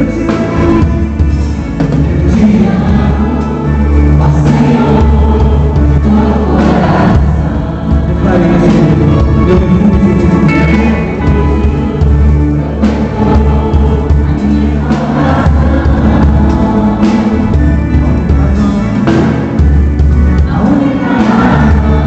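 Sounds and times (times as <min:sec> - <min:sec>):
sustained bass: 0:00.0 - 0:22.0
voices singing: 0:00.0 - 0:22.0.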